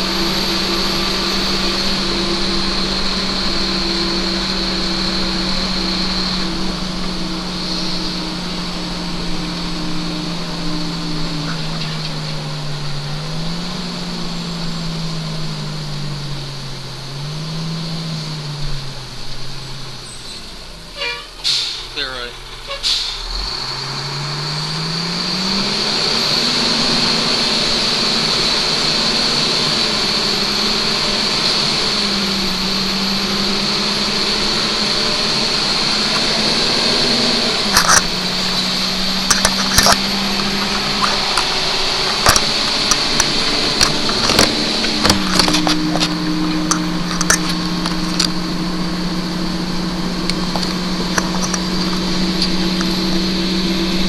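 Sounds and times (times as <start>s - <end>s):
vehicle engine running: 0.0s - 54.0s.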